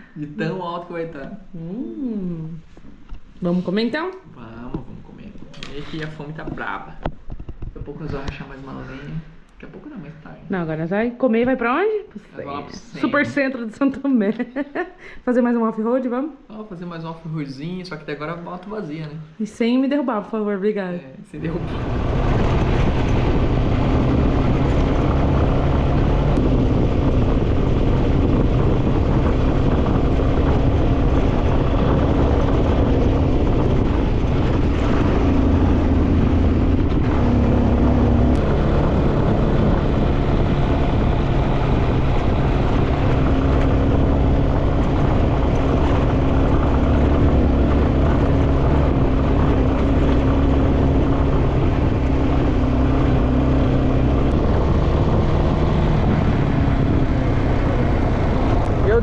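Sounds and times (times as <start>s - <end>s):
road and wind noise: 2.8s - 9.8s, 21.4s - 59.0s
motorcycle engine running: 21.4s - 59.0s.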